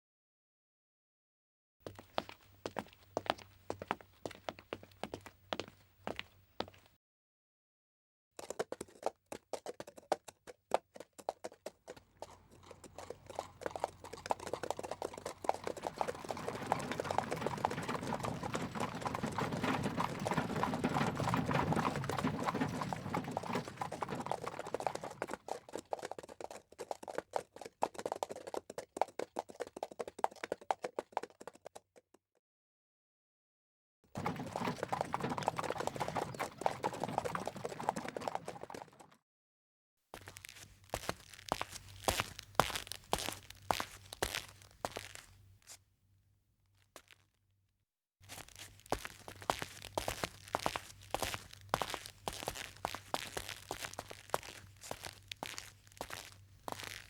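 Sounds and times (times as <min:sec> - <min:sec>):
clip-clop steps on hard surface: 0:08.4 - 0:31.6, 0:34.2 - 0:39.0, 0:40.2 - 0:45.4, 0:48.2 - 0:57.0.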